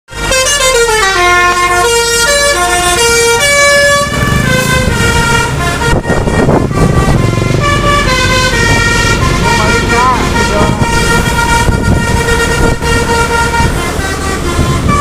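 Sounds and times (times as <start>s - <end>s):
musical air horn melody: 0.2s - 15.0s.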